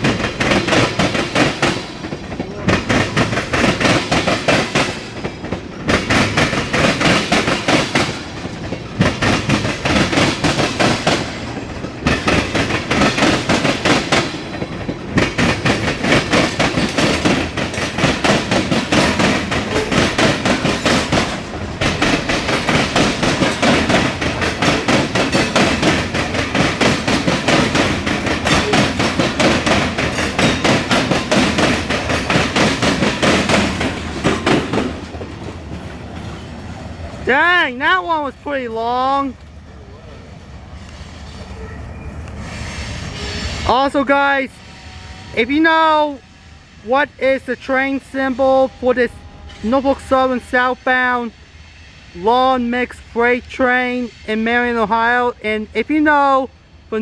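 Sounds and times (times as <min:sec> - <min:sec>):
train wheels clicking over rail joints: 0:00.0 - 0:39.6.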